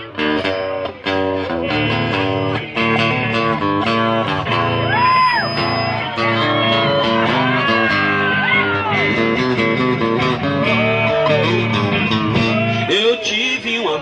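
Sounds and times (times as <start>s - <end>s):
electric guitar lead with bends: 0.0s - 13.3s
chords and bass: 0.0s - 14.0s.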